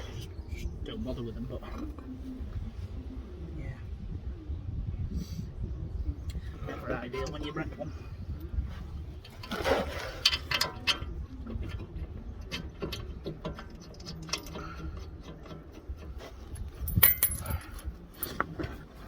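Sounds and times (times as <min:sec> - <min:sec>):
metal tools clinking: 0:12.8 - 0:15.6, 0:16.6 - 0:18.5.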